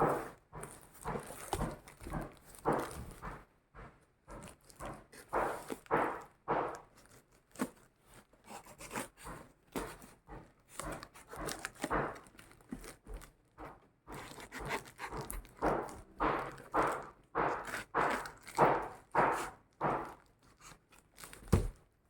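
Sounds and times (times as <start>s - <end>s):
packaging rustling and ripping: 14.1s - 21.8s.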